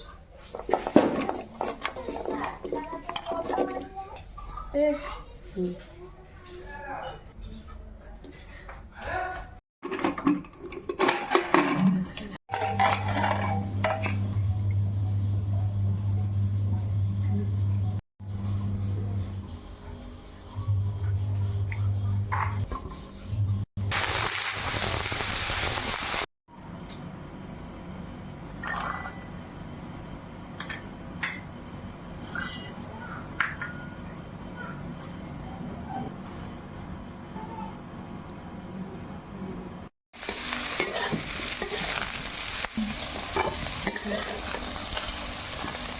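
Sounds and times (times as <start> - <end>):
metal utensils clinking: 9.8 - 14.1, 40.2 - 45.9.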